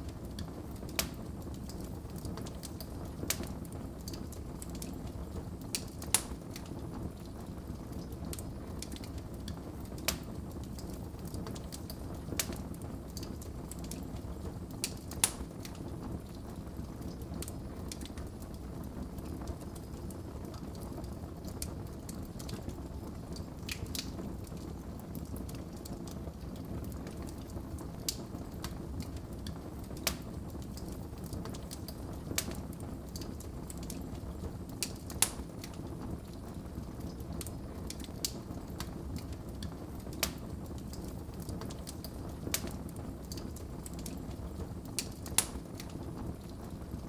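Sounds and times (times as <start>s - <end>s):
wood fire crackling: 0.0s - 47.0s
sharp pops and snaps: 0.3s - 5.0s, 5.6s - 6.7s, 8.0s - 14.1s, 14.8s - 15.8s, 23.3s - 24.2s, 27.0s - 35.8s, 37.4s - 46.6s.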